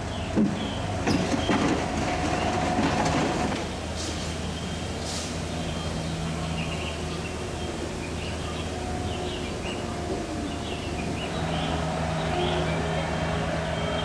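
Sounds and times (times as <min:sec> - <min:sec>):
low machine hum: 0:03.2 - 0:14.0
birds chirping: 0:03.5 - 0:13.2.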